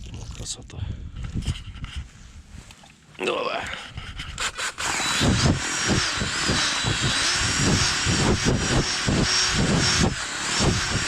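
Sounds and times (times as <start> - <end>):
wind buffeting microphone: 0.0 - 2.6, 3.9 - 11.0.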